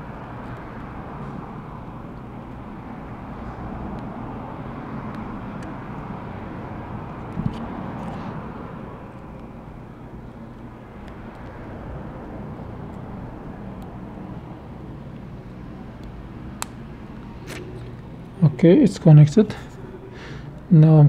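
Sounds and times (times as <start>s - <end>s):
low hum and rumble: 0.0s - 21.0s.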